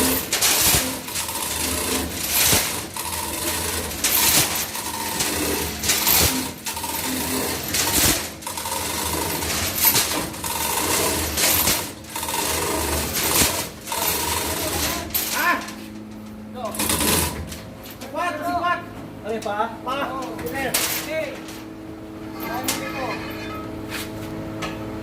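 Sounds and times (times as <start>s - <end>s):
cutting machine strokes: 0.0s - 15.9s
steady machine hum: 0.0s - 25.0s.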